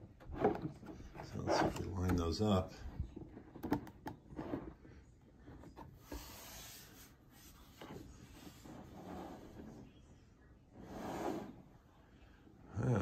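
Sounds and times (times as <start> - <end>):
plastic rubbing on plastic: 0.0 - 10.1.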